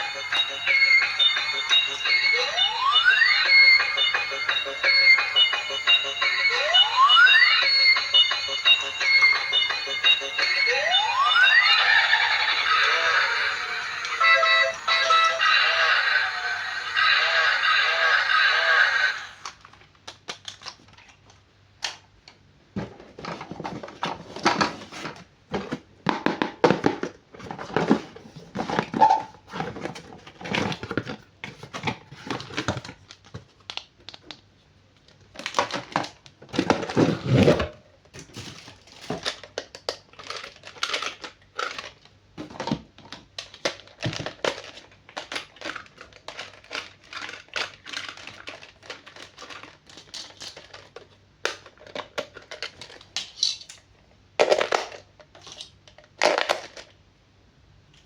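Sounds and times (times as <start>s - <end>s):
packaging crinkling and rustling: 19.4s - 22.0s, 22.8s - 53.5s.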